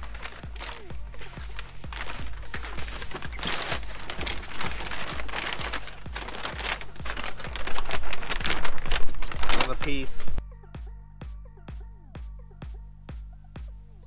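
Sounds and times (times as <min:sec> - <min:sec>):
packaging crinkling: 0:00.0 - 0:10.4
background music with beat: 0:00.0 - 0:14.0.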